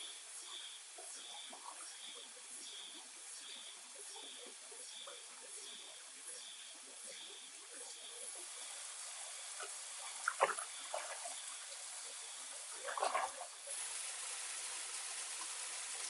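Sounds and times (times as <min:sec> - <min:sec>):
steady background hiss: 0:00.0 - 0:16.0
water splashing: 0:08.6 - 0:16.0.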